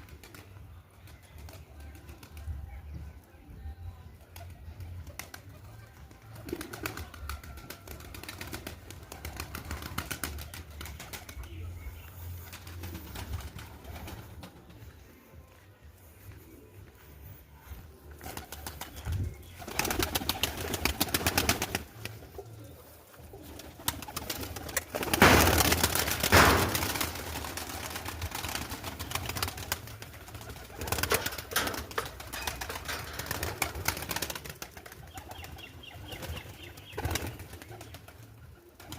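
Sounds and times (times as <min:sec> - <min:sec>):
rapid wing clattering: 0:24.0 - 0:30.0.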